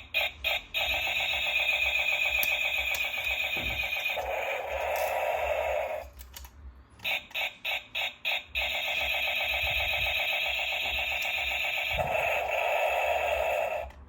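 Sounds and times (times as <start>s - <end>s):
rapidly pulsing toy buzz: 7.7s - 13.9s.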